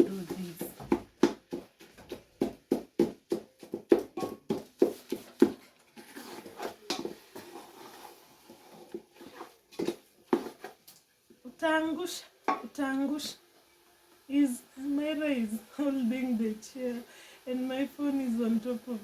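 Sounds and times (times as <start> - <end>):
greens pounded in a pot: 0.0 - 7.5.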